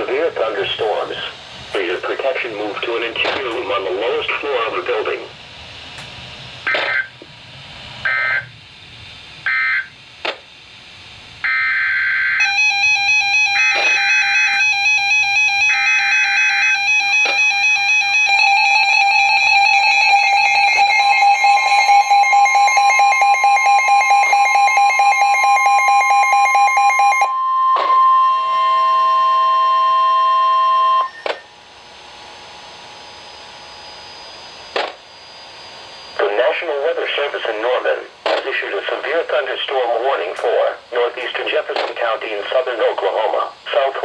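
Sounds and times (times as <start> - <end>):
harsh continuous alert tone: 0.0 - 44.0
steady high tone: 11.4 - 38.1.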